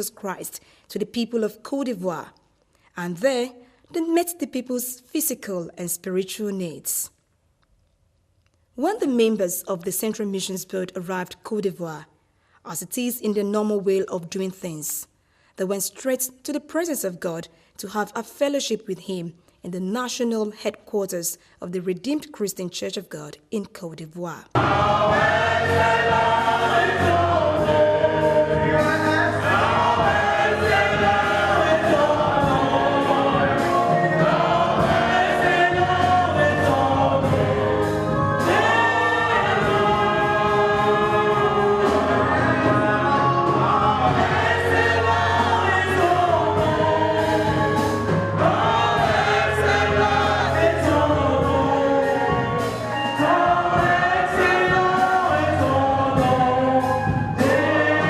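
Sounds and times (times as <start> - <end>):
gospel choir with band: 24.5 - 58.0.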